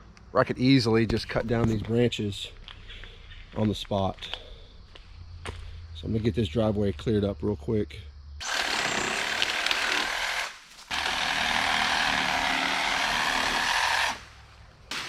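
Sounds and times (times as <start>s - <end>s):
reciprocating saw cutting branches: 8.4s - 15.0s.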